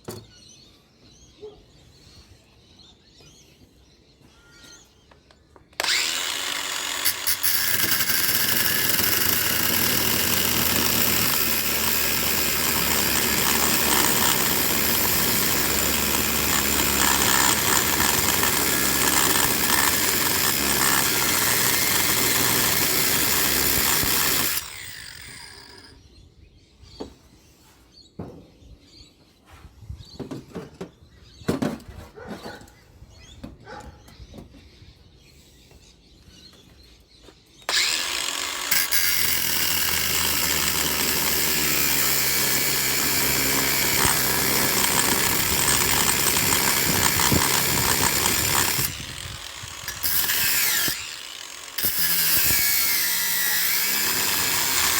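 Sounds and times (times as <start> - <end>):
power tool running: 5.8 - 25.9, 37.7 - 54.9.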